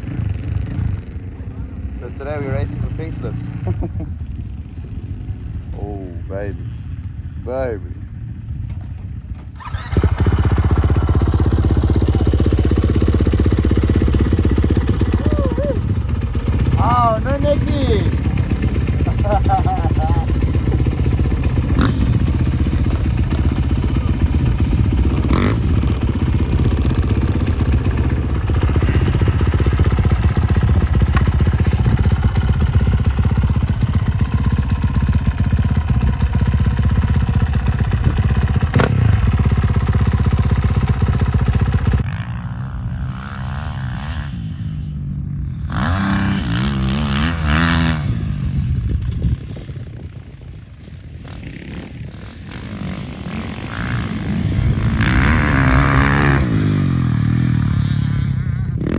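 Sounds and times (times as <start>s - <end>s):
motocross bike engine running hard: 0.0s - 58.9s
motorbike revving: 0.0s - 58.9s
wind noise: 47.9s - 56.5s.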